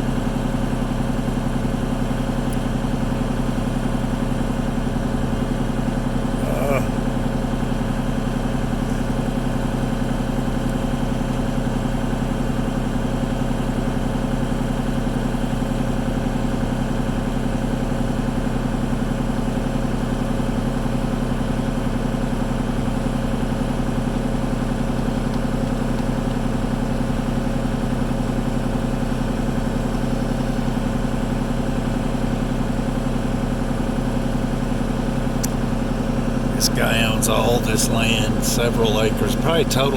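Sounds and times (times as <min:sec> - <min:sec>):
diesel engine idling: 0:33.6 - 0:39.9.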